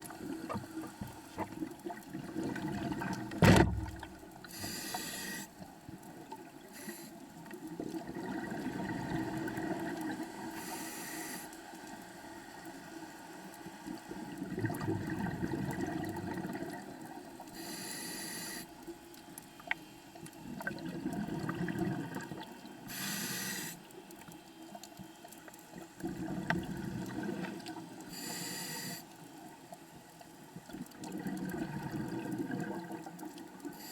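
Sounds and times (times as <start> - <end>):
sharp thump: 3.4 - 4.0
hissing regulator inhale: 4.5 - 5.6, 6.7 - 7.2, 10.5 - 11.6, 17.6 - 18.7, 22.9 - 23.8, 28.1 - 29.1.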